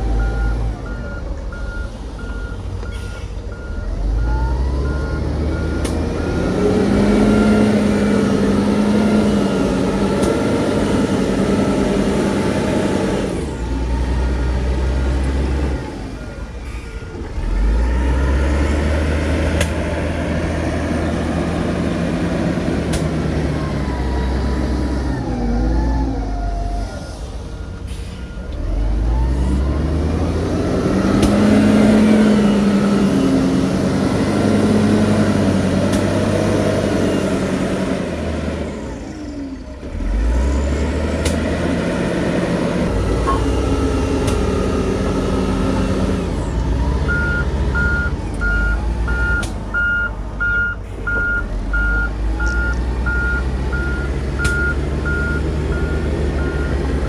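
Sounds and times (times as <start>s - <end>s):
reversing alarm beeping: 0.0s - 9.5s, 46.6s - 57.0s
heavy machinery diesel engines: 0.0s - 57.0s.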